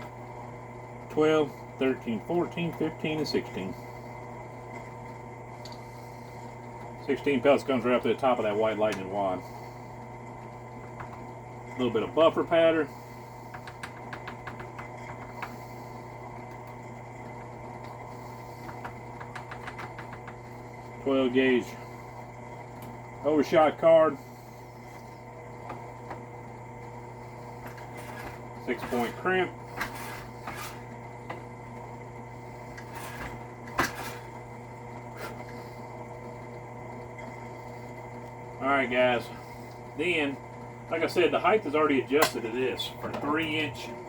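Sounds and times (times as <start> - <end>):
steady hum: 0.0 - 44.0.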